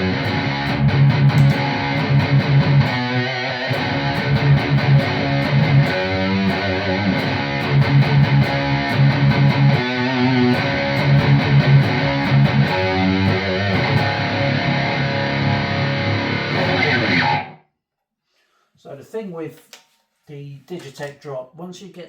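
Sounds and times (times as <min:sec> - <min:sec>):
distorted electric guitar riff: 0:00.0 - 0:17.6.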